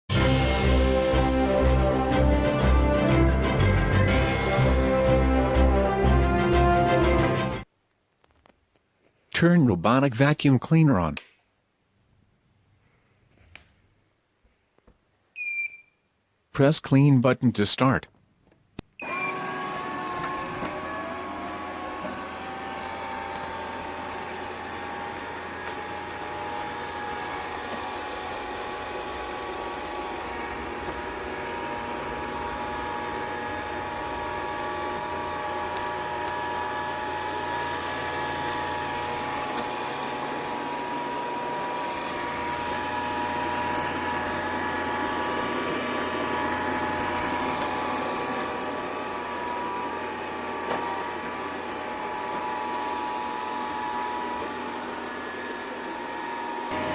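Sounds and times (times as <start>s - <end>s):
robot vacuum motors whirring: 19.0s - 56.9s.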